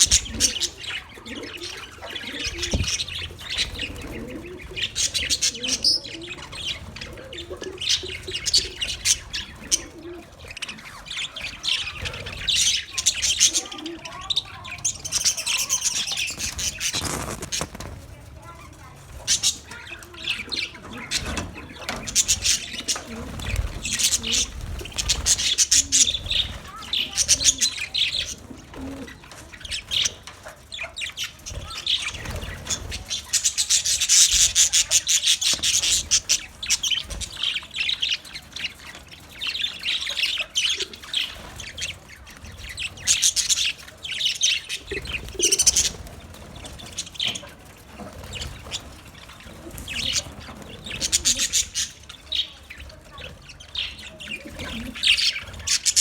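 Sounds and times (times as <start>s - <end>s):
budgerigars chattering and chirping: 0.0s - 56.0s
wings fluttering: 0.0s - 56.0s
rustling: 15.0s - 20.1s.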